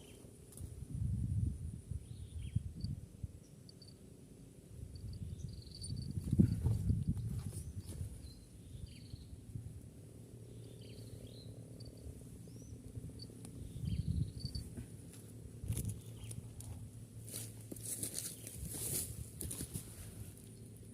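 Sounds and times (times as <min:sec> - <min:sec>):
high insect hum: 0:00.0 - 0:20.9
small bird chirping: 0:02.0 - 0:04.0, 0:04.9 - 0:09.4, 0:10.4 - 0:14.8, 0:15.7 - 0:16.7
rustling handling noise: 0:14.6 - 0:20.6.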